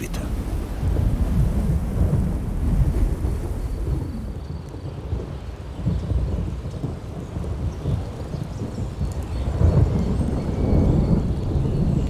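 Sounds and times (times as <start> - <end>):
thunder rumbling: 0.0 - 4.4.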